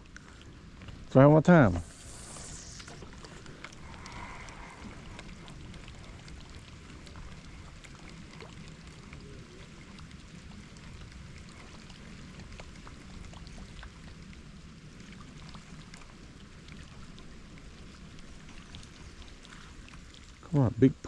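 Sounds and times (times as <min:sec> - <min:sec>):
light rain falling: 0:00.0 - 0:21.0
low rumble: 0:01.6 - 0:07.8.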